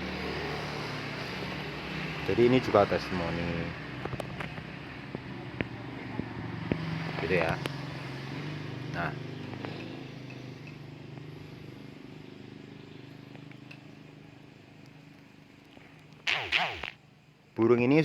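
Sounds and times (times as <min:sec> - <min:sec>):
passing vehicle engine hum: 0:00.0 - 0:13.3.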